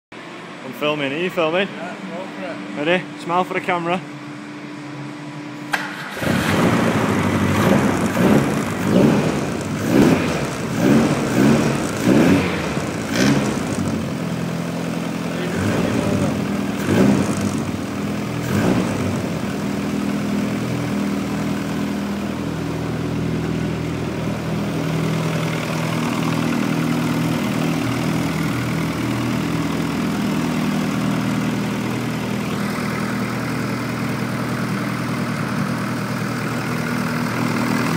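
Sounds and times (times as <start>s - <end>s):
engine starting and revving: 5.7s - 14.2s, 15.4s - 19.5s.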